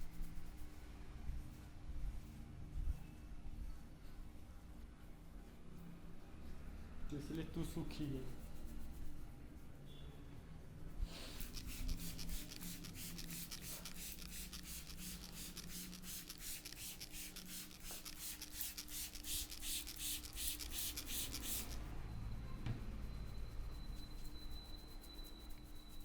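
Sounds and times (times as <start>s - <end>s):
fingers rubbing hair on scalp: 11.2s - 21.8s, 23.3s - 26.0s.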